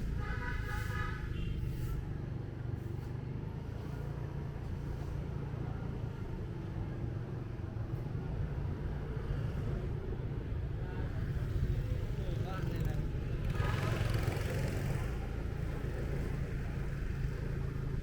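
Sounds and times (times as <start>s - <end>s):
street traffic noise: 0.0s - 18.0s.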